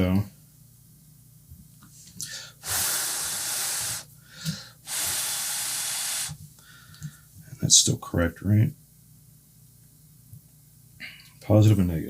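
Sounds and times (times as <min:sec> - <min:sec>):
rushing air hisses: 0:02.6 - 0:04.1, 0:04.8 - 0:06.4.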